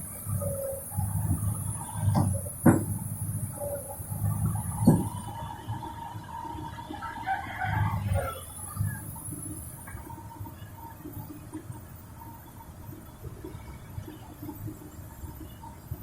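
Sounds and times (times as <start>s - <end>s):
sharp knock: 2.2s - 2.9s
rooster crowing: 7.0s - 9.0s.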